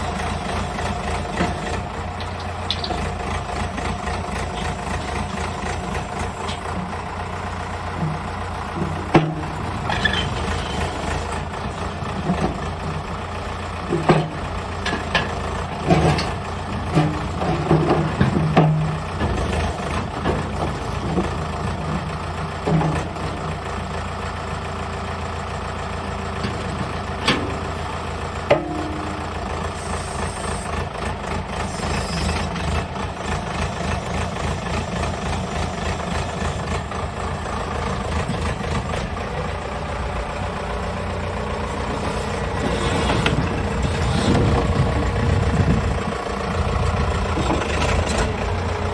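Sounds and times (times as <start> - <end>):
diesel engine idling: 0.0 - 48.9.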